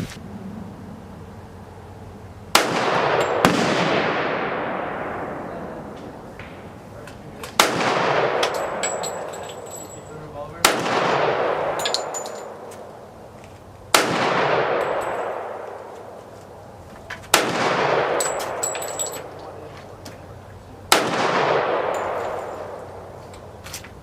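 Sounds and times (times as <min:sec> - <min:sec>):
pistol shots echoing: 0:02.5 - 0:06.8, 0:07.4 - 0:09.6, 0:10.6 - 0:12.9, 0:13.9 - 0:15.8, 0:17.3 - 0:19.3, 0:20.9 - 0:23.2
light metallic clinks: 0:08.4 - 0:10.4, 0:11.7 - 0:12.8, 0:18.2 - 0:20.3, 0:21.8 - 0:23.8.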